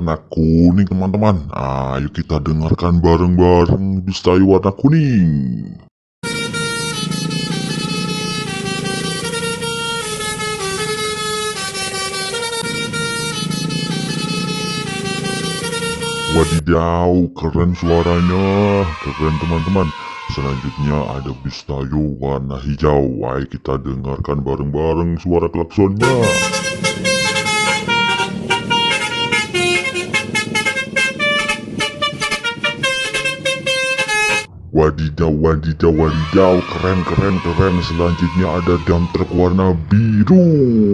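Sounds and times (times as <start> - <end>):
musical horn playing a tune: 6.2 - 16.6, 26.0 - 34.5.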